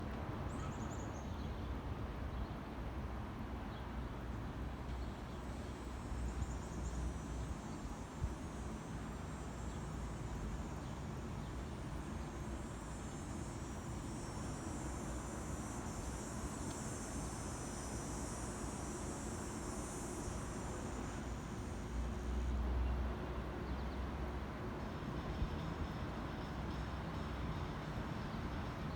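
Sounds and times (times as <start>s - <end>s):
cicada buzzing: 5.6s - 22.7s.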